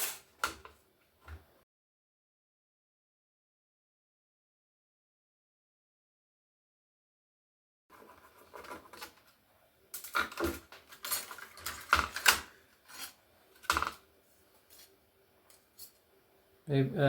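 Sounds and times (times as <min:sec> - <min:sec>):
metal scrap parts clinking: 0:00.0 - 0:00.6, 0:09.9 - 0:14.0.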